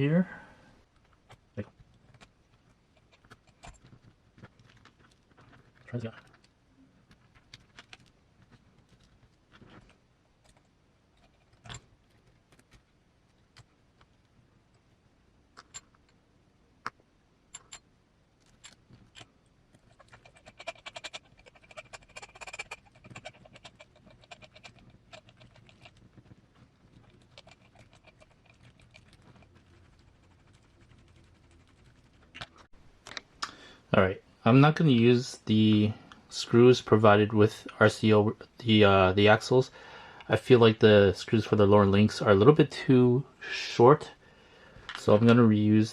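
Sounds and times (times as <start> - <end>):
small tools clicking on metal parts: 17.5 - 26.0
rapid ticking: 19.8 - 26.3, 26.9 - 32.3.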